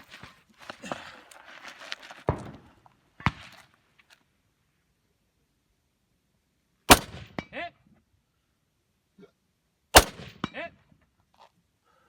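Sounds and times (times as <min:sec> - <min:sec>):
sharp cracks: 0:06.9 - 0:07.4, 0:10.0 - 0:10.4
loud rifle shot: 0:06.9 - 0:07.5, 0:10.0 - 0:10.6.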